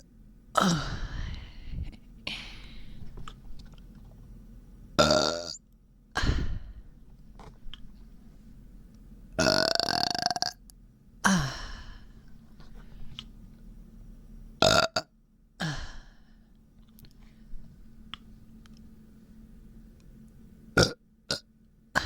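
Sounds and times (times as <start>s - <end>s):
person belching: 0.6s - 1.1s, 5.0s - 5.6s, 9.4s - 10.6s, 14.6s - 15.8s.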